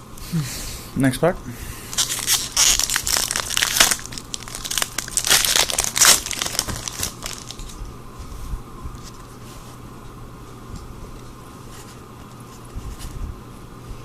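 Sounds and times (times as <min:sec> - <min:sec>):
foil wrapper tearing and crinkling: 0:01.9 - 0:07.8.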